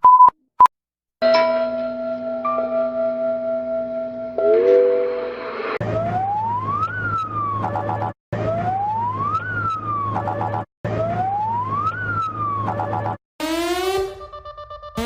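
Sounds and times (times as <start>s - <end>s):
rising siren-like alarm tone: 4.4s - 15.0s.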